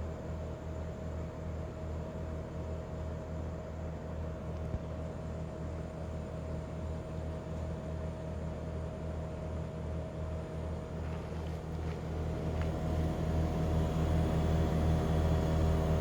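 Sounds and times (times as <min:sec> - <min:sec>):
heat pump humming: 0:10.3 - 0:16.0.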